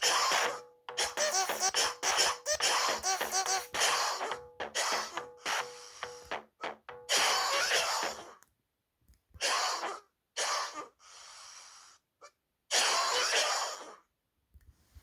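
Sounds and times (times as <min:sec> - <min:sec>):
synthesized cough sounds: 0:00.0 - 0:08.4, 0:12.7 - 0:13.9.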